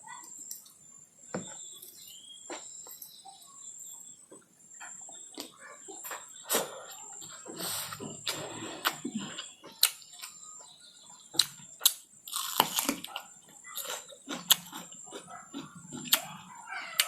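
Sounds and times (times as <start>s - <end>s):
chewing with wet mouth clicks: 11.3s - 16.4s.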